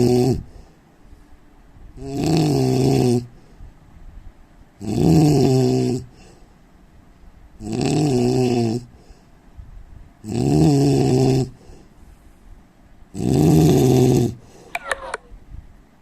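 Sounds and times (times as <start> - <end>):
man snoring: 0.0 - 0.5, 2.0 - 3.4, 4.8 - 6.2, 7.6 - 8.9, 10.2 - 11.6, 13.2 - 14.4
quiet breathing: 0.4 - 2.0, 3.2 - 4.4, 6.0 - 6.8, 8.5 - 10.2, 11.4 - 12.7, 14.3 - 14.9.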